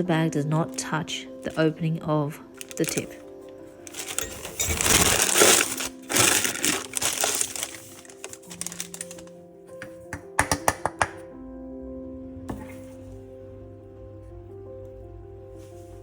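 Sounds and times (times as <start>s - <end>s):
background music: 0.0s - 16.0s
plastic piping bag crinkling: 2.6s - 9.4s.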